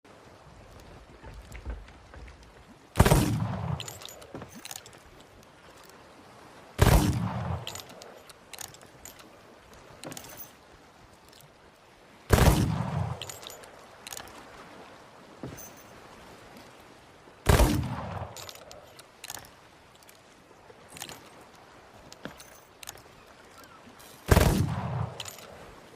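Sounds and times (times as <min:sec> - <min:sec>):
small clicks and knocks: 0:07.6 - 0:09.3, 0:13.2 - 0:14.4, 0:18.4 - 0:20.2, 0:22.1 - 0:23.1.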